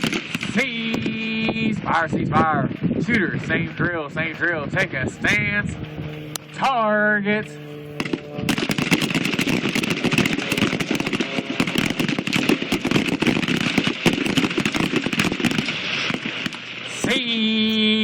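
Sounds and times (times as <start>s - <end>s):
gunfire crackle: 0.0s - 1.3s, 8.0s - 17.3s
person shouting command: 6.6s - 7.6s, 17.0s - 18.0s.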